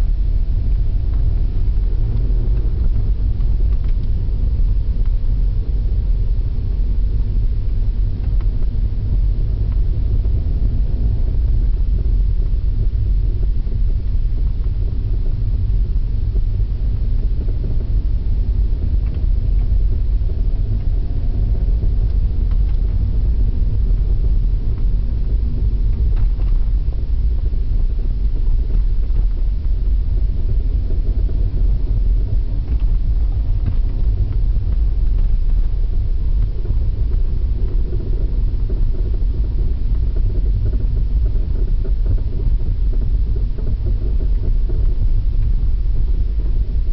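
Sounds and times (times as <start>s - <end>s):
car low rumble: 0.0s - 46.9s
faint wavering whine: 0.0s - 46.9s.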